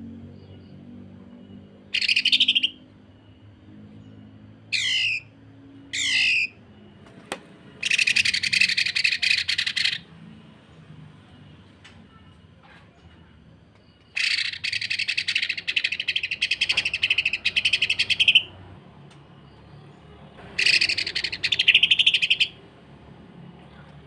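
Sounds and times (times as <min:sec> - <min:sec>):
bird harsh rough calls: 0:04.7 - 0:05.2, 0:05.9 - 0:06.5, 0:14.2 - 0:18.5, 0:20.5 - 0:22.6.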